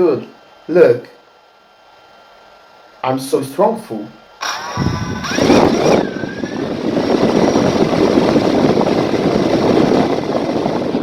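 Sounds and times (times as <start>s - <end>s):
drone motors and propellers: 4.4s - 11.0s.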